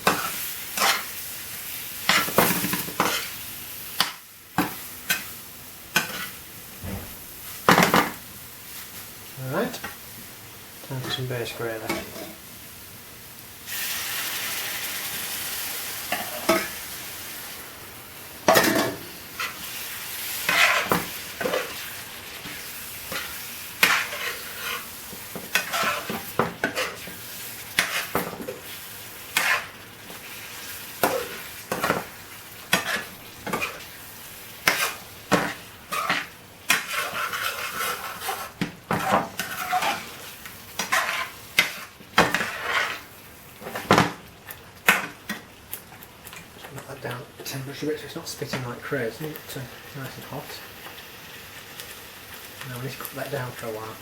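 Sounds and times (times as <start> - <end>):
spoon scraping a pan: 0.0 - 1.1, 2.1 - 3.4, 6.0 - 6.4, 16.1 - 16.8, 18.5 - 32.1, 32.7 - 33.9, 34.6 - 43.9
loud sizzle in a pan: 0.0 - 54.0.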